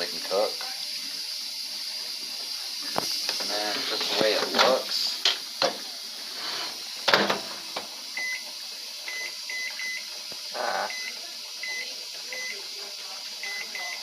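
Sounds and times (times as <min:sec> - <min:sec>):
microwave keypad beeps: 0:08.2 - 0:08.5, 0:09.1 - 0:10.1, 0:10.7 - 0:12.6, 0:13.4 - 0:14.0.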